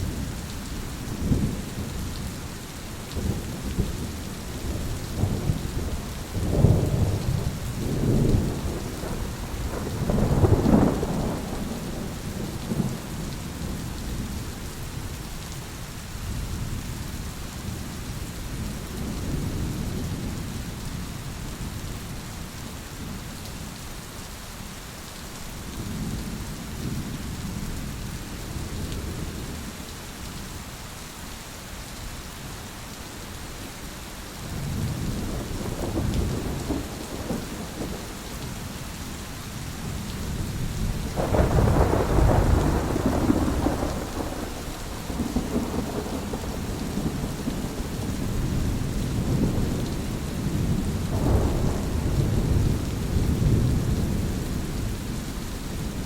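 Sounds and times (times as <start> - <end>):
rain falling: 0.0 - 56.0
rolling thunder: 3.2 - 14.4, 34.6 - 38.6, 39.9 - 55.2.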